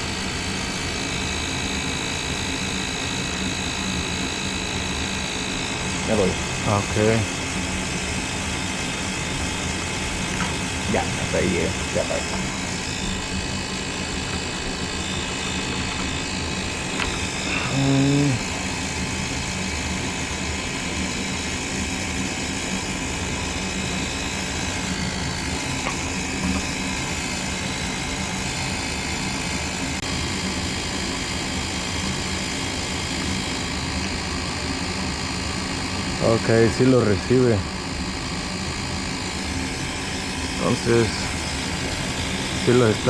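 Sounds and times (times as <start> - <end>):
motor whirring: 8.4 - 20.1
person speaking: 10.9 - 12.8, 17.1 - 18.6.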